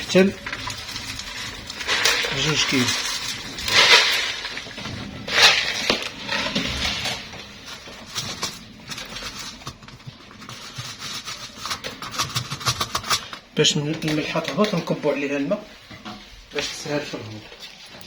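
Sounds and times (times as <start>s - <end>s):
salt granules pouring: 0.0s - 11.9s
grains ticking and crackling: 0.0s - 15.7s.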